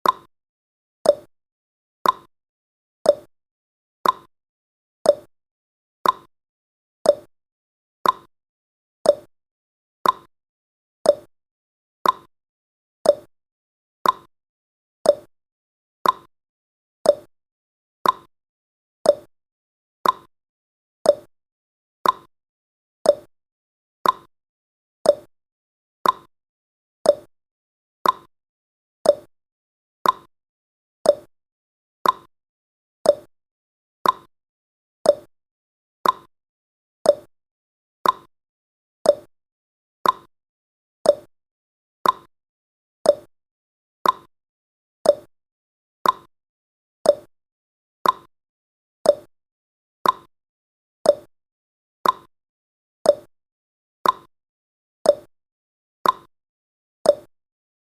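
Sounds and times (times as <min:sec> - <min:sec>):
timer ticking: 0:00.0 - 0:00.3, 0:01.1 - 0:01.3, 0:02.0 - 0:02.3, 0:03.1 - 0:03.3, 0:04.0 - 0:04.3, 0:05.1 - 0:05.3, 0:06.0 - 0:06.3, 0:07.1 - 0:07.3, 0:08.0 - 0:08.3, 0:09.1 - 0:09.3, 0:10.0 - 0:10.3, 0:11.1 - 0:11.3, 0:12.0 - 0:12.3, 0:13.1 - 0:13.3, 0:14.0 - 0:14.3, 0:15.1 - 0:15.3, 0:16.0 - 0:16.3, 0:17.1 - 0:17.3, 0:18.0 - 0:18.3, 0:19.1 - 0:19.3, 0:20.0 - 0:20.3, 0:21.1 - 0:21.3, 0:22.0 - 0:22.3, 0:23.1 - 0:23.3, 0:24.0 - 0:24.3, 0:25.1 - 0:25.3, 0:26.0 - 0:26.3, 0:27.1 - 0:27.3, 0:28.0 - 0:28.3, 0:29.0 - 0:29.3, 0:30.0 - 0:30.3, 0:31.1 - 0:31.3, 0:32.0 - 0:32.3, 0:33.1 - 0:33.3, 0:34.0 - 0:34.3, 0:35.1 - 0:35.3, 0:36.0 - 0:36.3, 0:37.1 - 0:37.3, 0:38.0 - 0:38.3, 0:39.1 - 0:39.3, 0:40.0 - 0:40.3, 0:41.1 - 0:41.3, 0:42.0 - 0:42.3, 0:43.1 - 0:43.3, 0:44.0 - 0:44.3, 0:45.0 - 0:45.3, 0:46.0 - 0:46.3, 0:47.1 - 0:47.3, 0:48.0 - 0:48.3, 0:49.1 - 0:49.3, 0:50.0 - 0:50.3, 0:51.1 - 0:51.3, 0:52.0 - 0:52.3, 0:53.1 - 0:53.3, 0:54.0 - 0:54.3, 0:55.1 - 0:55.3, 0:56.0 - 0:56.3, 0:57.1 - 0:57.3.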